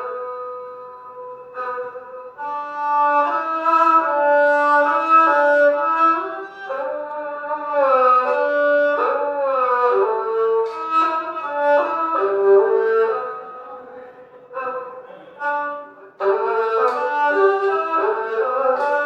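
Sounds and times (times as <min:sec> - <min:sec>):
bowed fiddle slow melody: 0:00.0 - 0:19.0.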